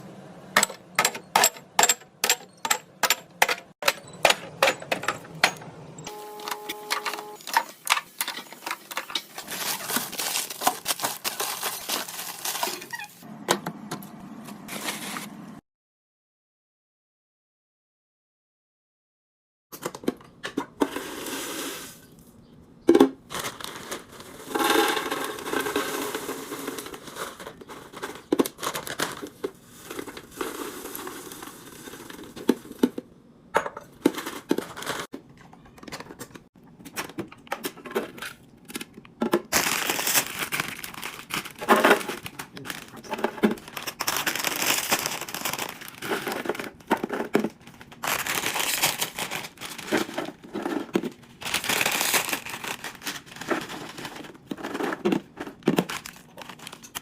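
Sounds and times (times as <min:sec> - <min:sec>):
items being set down: 0:00.6 - 0:15.3
plastic packaging crinkling: 0:07.0 - 0:13.2, 0:23.2 - 0:32.4, 0:38.1 - 0:57.0.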